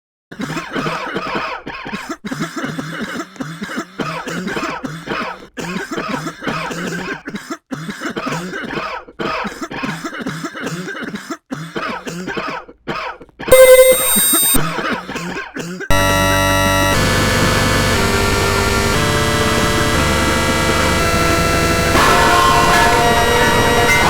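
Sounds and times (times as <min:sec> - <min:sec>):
person coughing: 0:00.3 - 0:13.2, 0:14.8 - 0:15.9.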